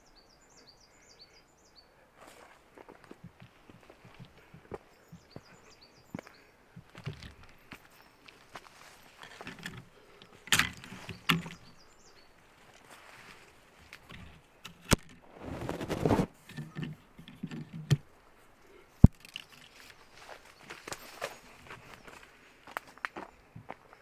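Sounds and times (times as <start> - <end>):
footsteps on forest trail: 2.2 - 10.2, 10.9 - 14.1, 19.0 - 24.0
scuffing crunch: 6.2 - 9.6.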